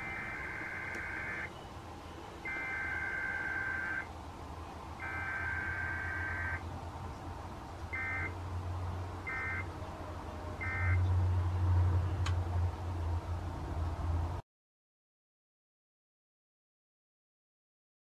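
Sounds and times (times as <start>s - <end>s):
buzzy two-tone data bursts: 0.0s - 1.5s, 2.4s - 4.1s, 5.0s - 6.6s.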